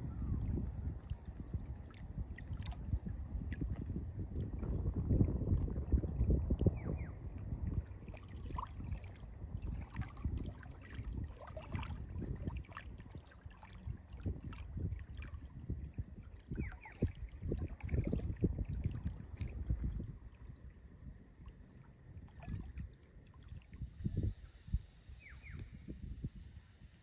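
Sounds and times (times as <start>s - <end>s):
wind buffeting microphone: 0.0s - 21.5s
small waves lapping: 1.0s - 4.7s, 7.7s - 23.8s.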